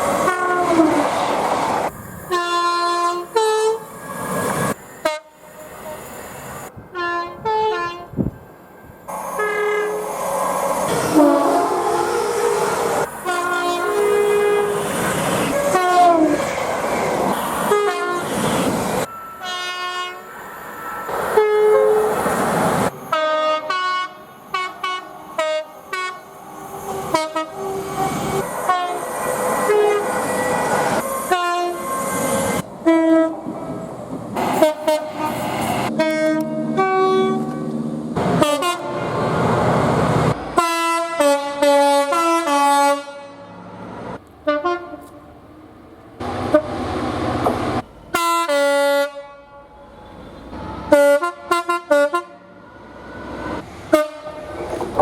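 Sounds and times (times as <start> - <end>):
train running noise: 0.0 - 42.5, 43.5 - 48.8, 49.6 - 55.0
train horn blasts: 0.2 - 1.0, 2.3 - 3.8, 5.0 - 5.4, 6.9 - 8.2, 9.3 - 10.1, 10.9 - 12.6, 13.2 - 14.9, 15.5 - 16.4, 17.6 - 18.4, 19.4 - 20.3, 21.3 - 22.1, 23.1 - 26.3, 27.0 - 32.2, 32.8 - 33.4, 34.5 - 37.7, 38.4 - 39.1, 40.6 - 43.6, 44.4 - 45.2, 46.5 - 46.8, 48.1 - 52.4, 53.9 - 54.5.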